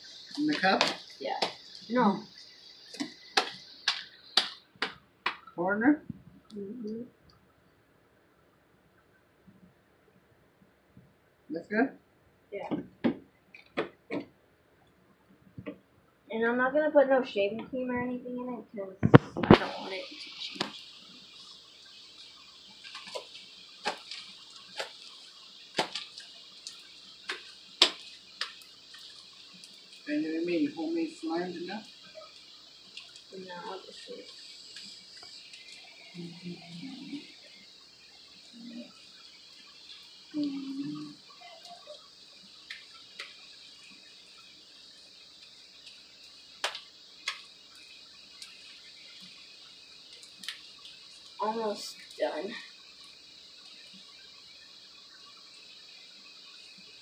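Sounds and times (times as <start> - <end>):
steady hiss: 0.0 - 57.0.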